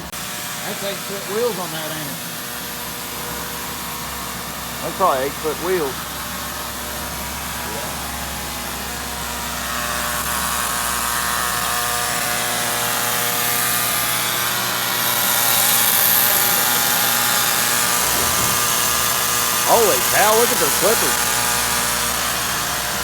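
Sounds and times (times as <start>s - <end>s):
sawmill machinery humming: 17.7s - 22.3s.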